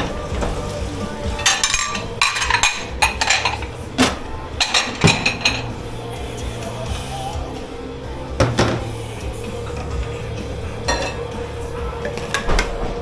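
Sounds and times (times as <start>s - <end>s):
dishes and cutlery clattering: 0.0s - 5.9s, 10.8s - 13.0s.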